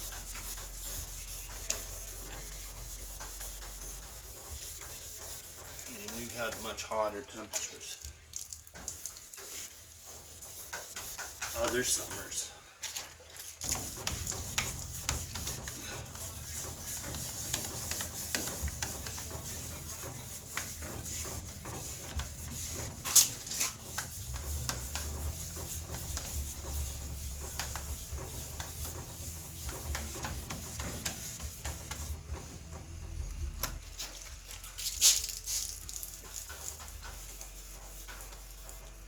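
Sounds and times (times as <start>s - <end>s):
sandpaper scratching: 0.0s - 7.1s, 9.0s - 12.4s, 13.6s - 32.2s, 34.8s - 39.0s.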